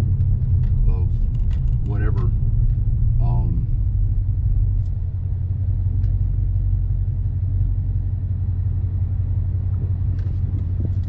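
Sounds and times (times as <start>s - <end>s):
car interior engine and road noise: 0.0s - 11.0s.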